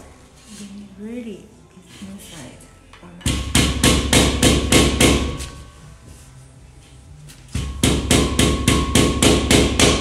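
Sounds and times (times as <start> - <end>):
rapid hammer blows on panels: 3.3 - 5.4, 7.6 - 10.0.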